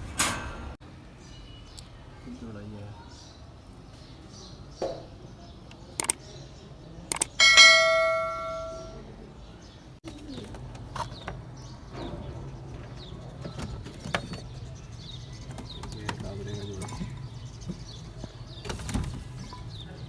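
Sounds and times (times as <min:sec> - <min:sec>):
metal object ringing like bell: 0:07.4 - 0:09.0.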